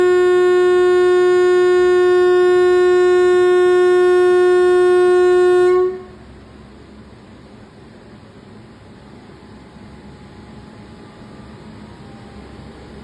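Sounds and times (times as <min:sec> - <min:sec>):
shrill locomotive horn blast: 0:00.0 - 0:06.4
low steady hum: 0:00.0 - 0:13.0.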